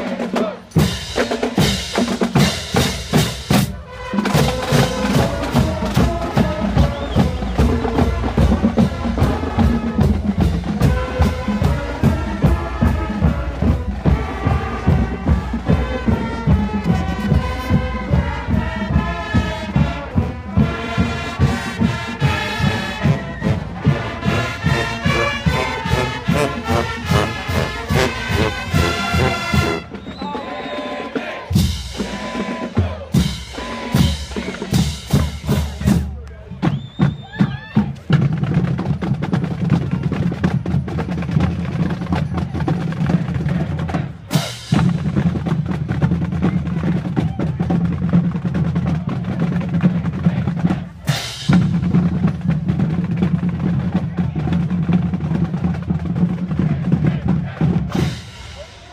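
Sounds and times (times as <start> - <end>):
brass band playing: 0.0 - 36.1, 43.0 - 45.5, 49.8 - 52.8, 55.5 - 58.9
bass drum beat: 20.8 - 30.1.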